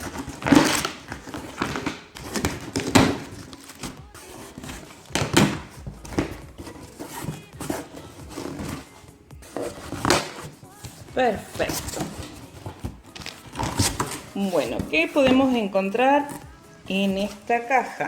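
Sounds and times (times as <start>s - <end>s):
cardboard box tape ripping: 0.0s - 8.9s, 11.6s - 15.4s.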